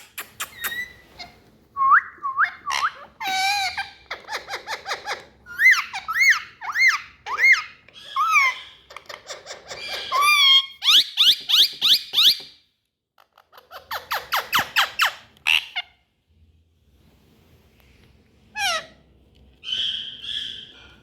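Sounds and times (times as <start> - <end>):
parakeet chirps and squawk: 0.0 - 1.4, 2.4 - 12.5, 13.2 - 16.0, 18.5 - 19.0, 19.6 - 21.0.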